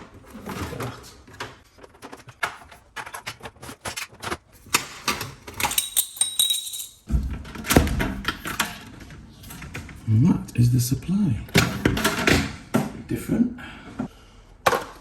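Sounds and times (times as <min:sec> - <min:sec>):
small parts clicking and rattling: 0:05.4 - 0:07.1.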